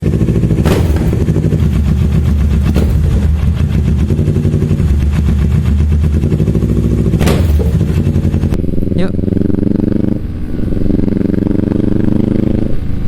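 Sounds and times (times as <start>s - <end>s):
motorcycle engine idling: 0.0s - 9.5s.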